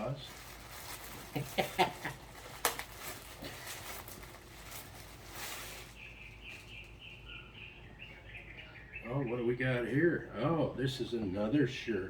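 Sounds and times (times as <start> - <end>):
package crinkling and rustling: 0.0 - 7.2
bird chirping: 5.6 - 11.6.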